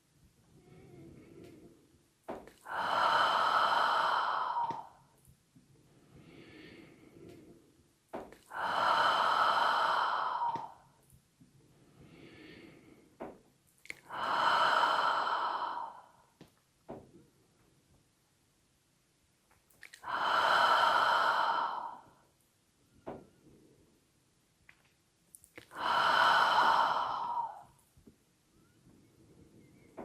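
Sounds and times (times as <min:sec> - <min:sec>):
quiet in-breaths: 0:00.2 - 0:18.0, 0:19.6 - 0:30.0
breathy exhalations: 0:00.6 - 0:05.0, 0:08.2 - 0:11.0, 0:12.0 - 0:16.4, 0:19.8 - 0:22.4, 0:25.6 - 0:28.0.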